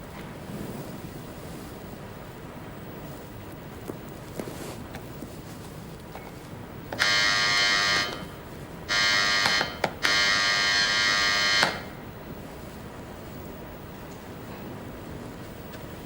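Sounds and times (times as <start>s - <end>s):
doorbell buzzer ringing: 6.9s - 12.1s.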